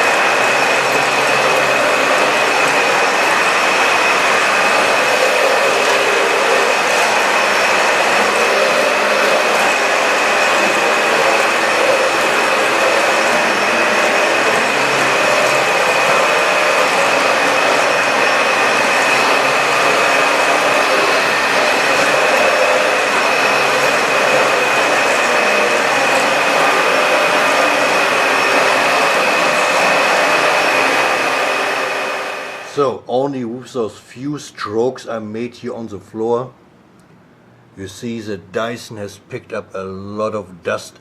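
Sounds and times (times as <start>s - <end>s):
high-pitched motor whine: 0.0s - 32.8s
vacuum cleaner running: 0.0s - 32.9s.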